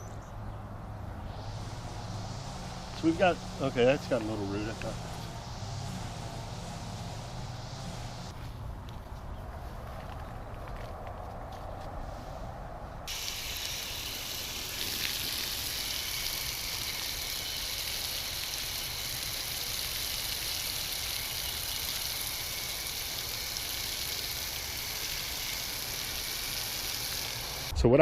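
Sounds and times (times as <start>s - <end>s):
steady high hiss: 1.1s - 8.4s, 13.1s - 27.7s.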